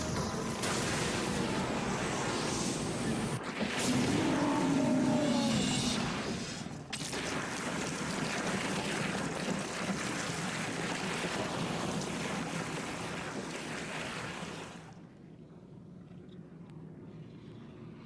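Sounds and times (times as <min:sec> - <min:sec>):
loud steady rushing noise: 0:00.0 - 0:04.3.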